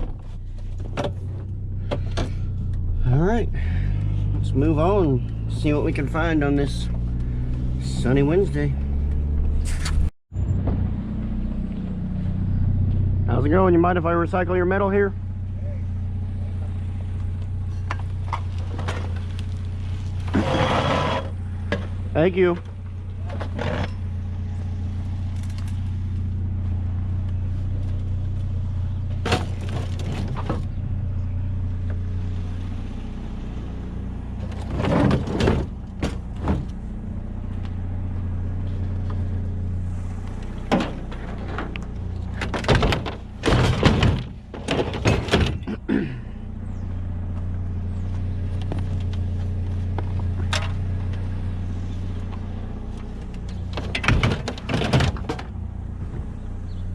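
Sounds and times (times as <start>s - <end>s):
truck engine idling: 0.0s - 56.9s
metal scrap clanking: 20.2s - 22.0s, 40.5s - 45.9s.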